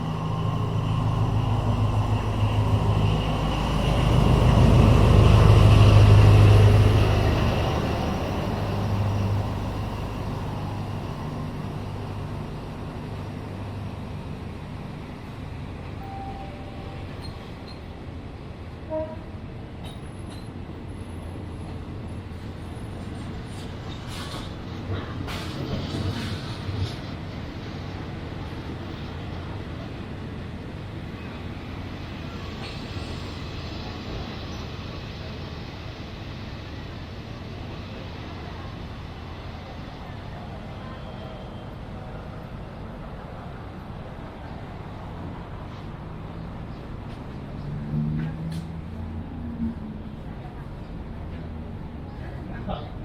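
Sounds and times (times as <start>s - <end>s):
diesel train engine drone: 0.0s - 53.0s
railway station background noise: 0.0s - 53.0s.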